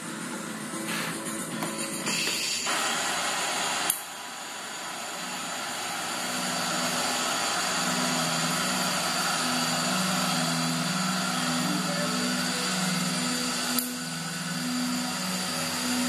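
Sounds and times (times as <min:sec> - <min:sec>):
welding arc hiss and buzz: 0:00.0 - 0:16.0
low hum: 0:04.1 - 0:16.0.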